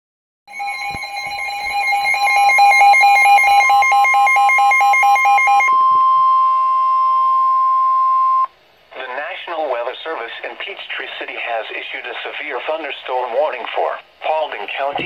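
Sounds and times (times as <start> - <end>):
steady two-tone attention signal: 0.5 - 8.5
two-pitch warbling alarm: 0.5 - 8.5.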